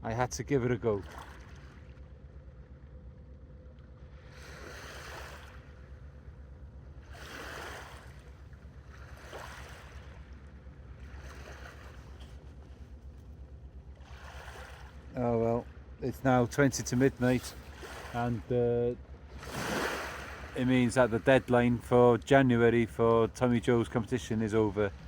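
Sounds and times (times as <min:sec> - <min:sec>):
low steady rumble: 0:00.0 - 0:25.0
sea water washing and lapping: 0:00.9 - 0:03.0, 0:03.8 - 0:25.0.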